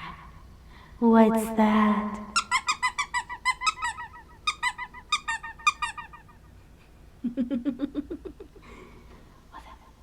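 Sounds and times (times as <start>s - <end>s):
squeaky dog toy squeaking: 2.4s - 6.2s.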